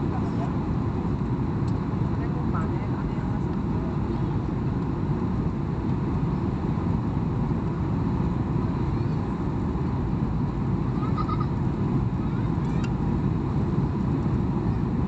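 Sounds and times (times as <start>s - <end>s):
airliner engine drone in cabin: 0.0s - 15.0s.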